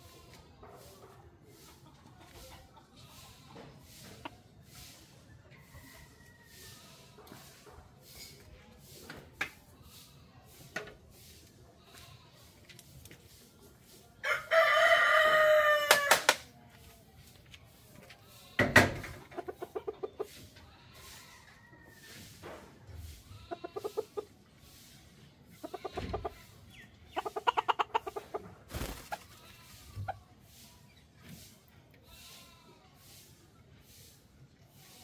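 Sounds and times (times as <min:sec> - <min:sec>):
chicken clucking rapidly: 0:01.4 - 0:05.0, 0:19.1 - 0:20.6, 0:23.5 - 0:24.5, 0:25.5 - 0:30.6
rooster crowing: 0:14.2 - 0:16.3.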